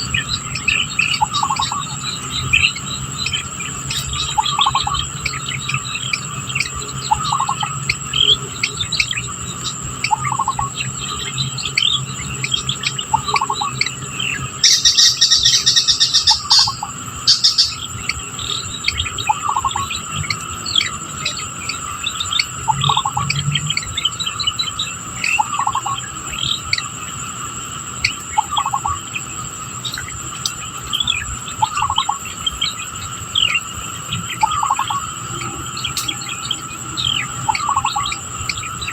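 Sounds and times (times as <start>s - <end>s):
birds chirping and calling: 0.0s - 38.9s
insects droning: 0.0s - 38.9s
loud rapid bird trill: 0.0s - 38.9s.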